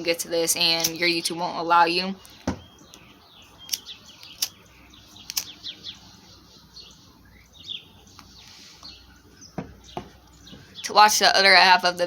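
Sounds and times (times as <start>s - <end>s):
songbirds chirping: 0.0s - 12.0s
sharp clicks: 2.2s - 4.6s, 5.2s - 5.6s.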